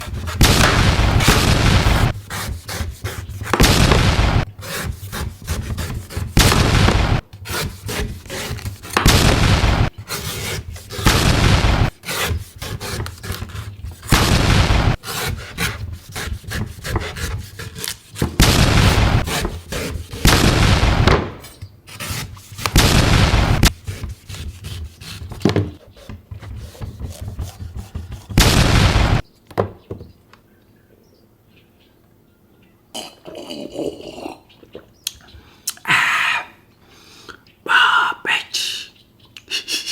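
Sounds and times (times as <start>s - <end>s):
knife scraping coconut: 0.0s - 3.7s, 4.5s - 6.6s, 7.3s - 11.3s, 11.9s - 14.3s, 15.0s - 20.4s, 21.3s - 28.6s.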